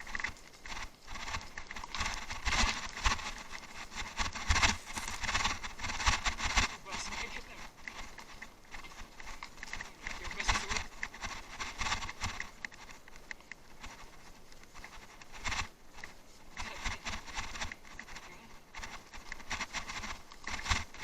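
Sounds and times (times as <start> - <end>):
tyre noise: 0.0 - 13.1
bicycle rattling over rough ground: 0.0 - 21.0.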